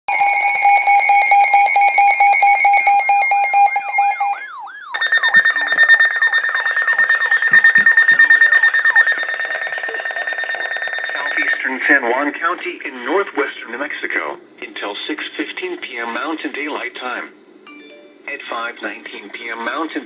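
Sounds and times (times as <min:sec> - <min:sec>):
swooping siren-like tone: 0:00.1 - 0:11.6
rapidly pulsing electronic beep: 0:00.1 - 0:12.0.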